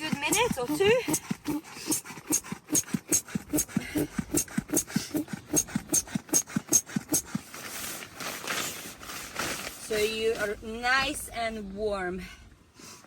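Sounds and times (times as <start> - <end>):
hand pump puffing and squeaking: 0.0 - 8.0.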